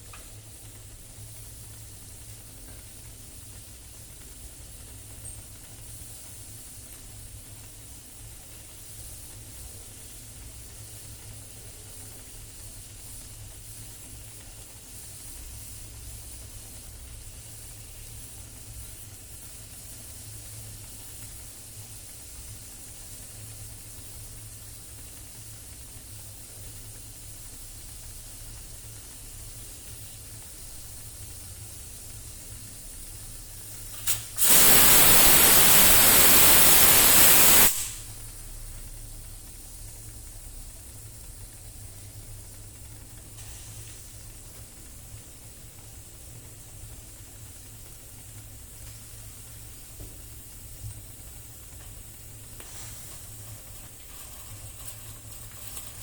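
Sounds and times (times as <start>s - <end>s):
pressure cooker hissing: 26.7s - 39.9s, 48.3s - 56.0s
steam venting: 32.0s - 38.5s, 50.4s - 56.0s.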